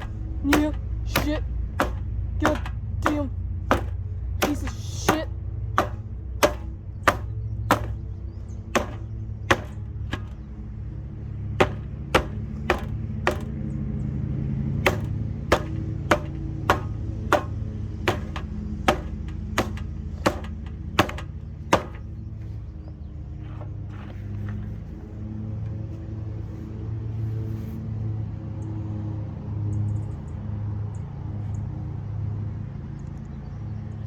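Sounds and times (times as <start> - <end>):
box fan humming: 0.0 - 13.8, 14.7 - 22.4.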